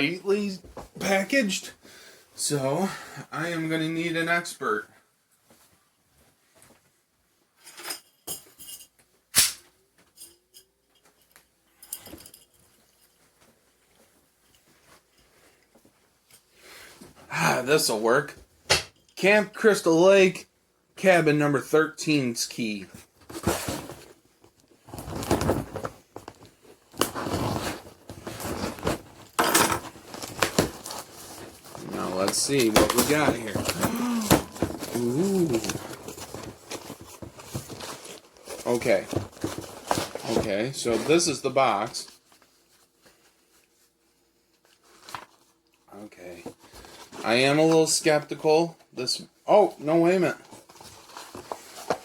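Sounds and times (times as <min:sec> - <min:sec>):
packing tape tearing: 0:09.4 - 0:09.6
packaging rustling: 0:24.9 - 0:42.5.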